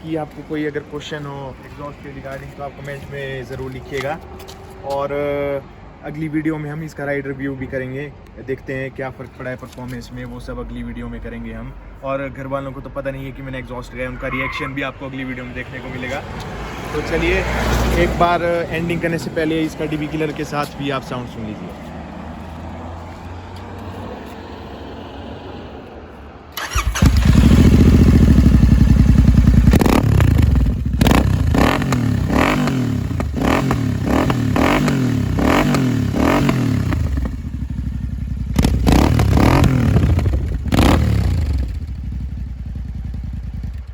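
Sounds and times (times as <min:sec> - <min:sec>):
exhaust cracks: 0:26.6 - 0:43.9
motorcycle engine revving: 0:26.6 - 0:43.9.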